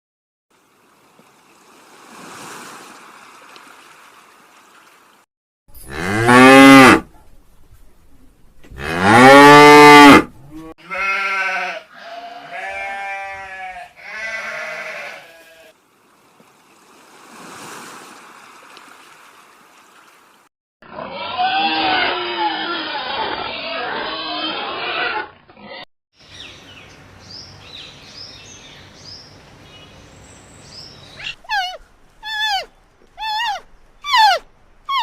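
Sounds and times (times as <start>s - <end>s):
cow mooing: 5.8s - 7.1s, 8.7s - 15.7s, 20.9s - 25.3s
animal bleats: 8.7s - 15.8s, 20.9s - 25.9s
rough animal call: 20.9s - 25.9s, 31.1s - 35.0s
breathy animal noise: 31.2s - 35.0s.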